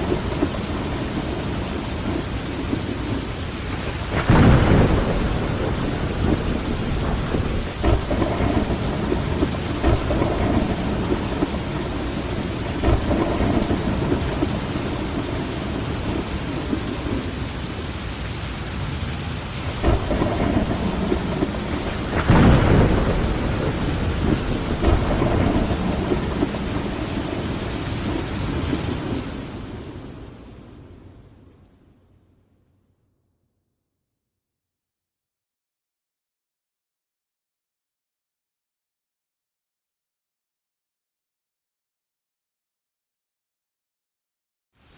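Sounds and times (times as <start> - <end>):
deep thunder rumbles: 0.0 - 31.1
heavy rain on window glass: 0.0 - 31.6.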